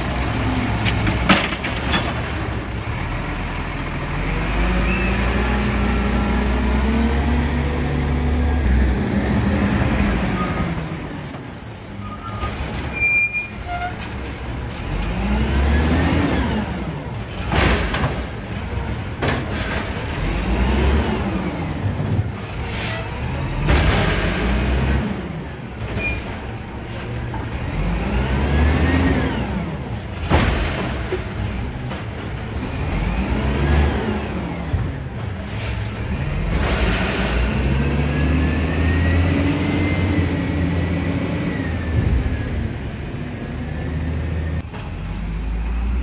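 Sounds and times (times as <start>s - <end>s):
diesel truck engine revving: 0.0s - 12.9s, 13.5s - 46.0s.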